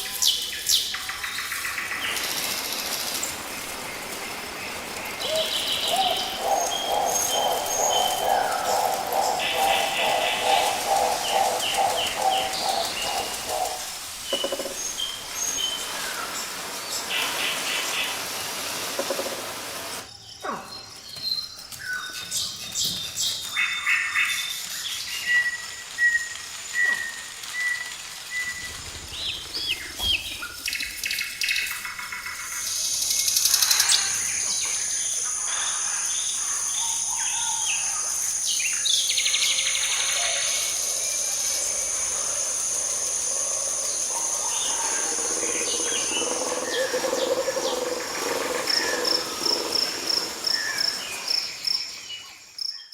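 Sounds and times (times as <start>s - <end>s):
forest birds chirping: 0.0s - 52.9s
high-pitched insect drone: 32.3s - 52.8s.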